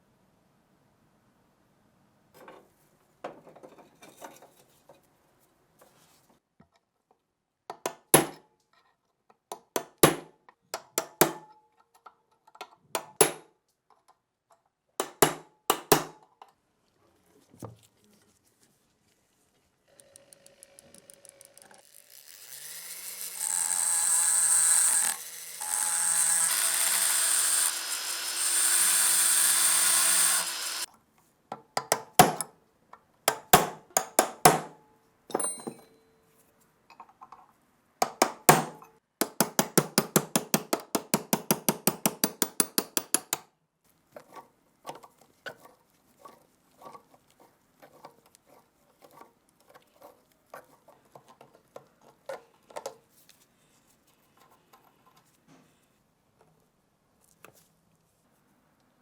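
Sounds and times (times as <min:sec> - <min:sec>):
small power tool whining: 0:19.9 - 0:30.9.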